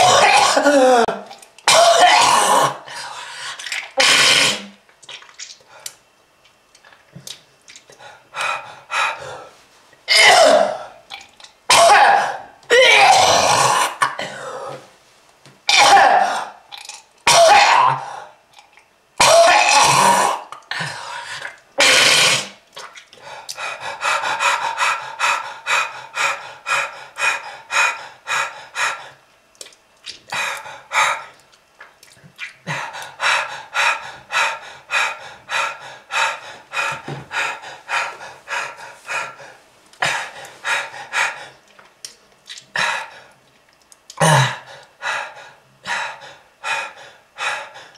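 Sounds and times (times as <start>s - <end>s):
person coughing: 0.0s - 2.8s, 10.1s - 10.9s, 11.7s - 14.8s, 15.7s - 16.6s, 17.3s - 18.1s, 44.2s - 44.6s.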